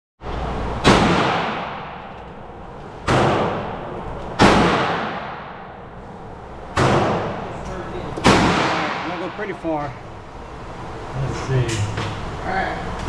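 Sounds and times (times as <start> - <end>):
pistol shots with echo: 0.8 - 2.0, 4.4 - 5.7, 8.2 - 9.1.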